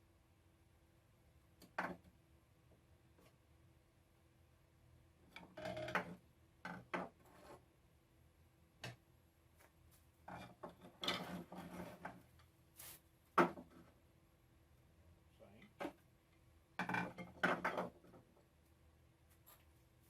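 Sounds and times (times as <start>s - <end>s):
wood scraping and rubbing: 10.2s - 12.4s.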